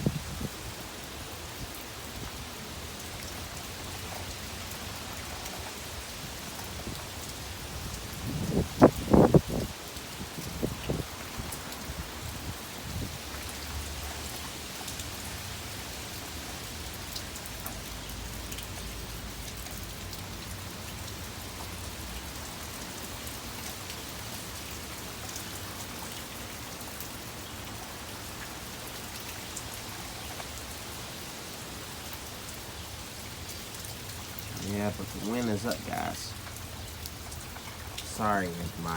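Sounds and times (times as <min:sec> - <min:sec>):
wind rumbling on microphone: 0:00.0 - 0:00.8, 0:06.2 - 0:13.4
rain pattering: 0:00.0 - 0:38.9.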